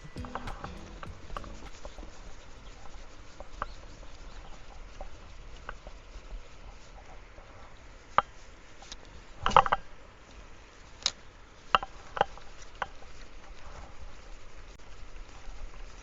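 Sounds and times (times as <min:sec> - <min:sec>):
faint steady hiss: 0:00.0 - 0:16.0.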